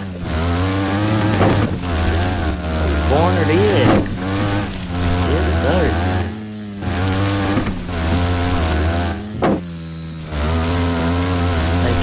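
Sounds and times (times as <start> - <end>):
atv engine revving: 0.0 - 12.0
sharp knock: 9.4 - 9.7.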